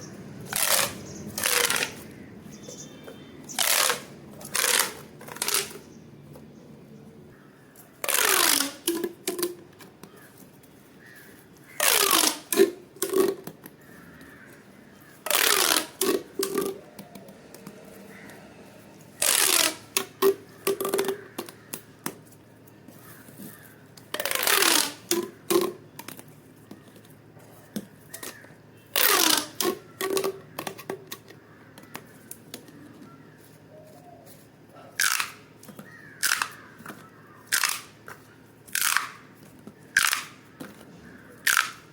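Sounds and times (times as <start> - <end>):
pop toy crunching: 35.0 - 39.2, 39.9 - 40.5, 41.4 - 41.9.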